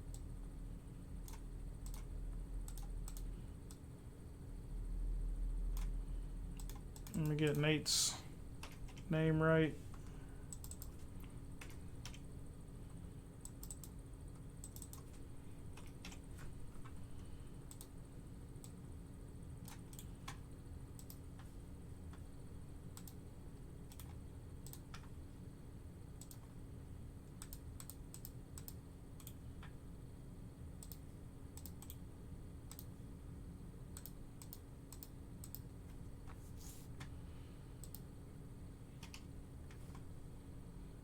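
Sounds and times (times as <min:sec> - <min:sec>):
steady low hum: 0:00.0 - 0:41.0
keyboard typing clicks: 0:01.2 - 0:03.8, 0:06.6 - 0:07.7, 0:10.5 - 0:12.2, 0:13.4 - 0:14.0, 0:14.6 - 0:15.2, 0:17.7 - 0:17.9, 0:21.0 - 0:21.2, 0:26.2 - 0:26.4, 0:27.4 - 0:29.8, 0:30.8 - 0:31.0, 0:31.6 - 0:32.0, 0:32.7 - 0:32.9, 0:33.9 - 0:35.7, 0:37.8 - 0:38.1, 0:39.0 - 0:40.0.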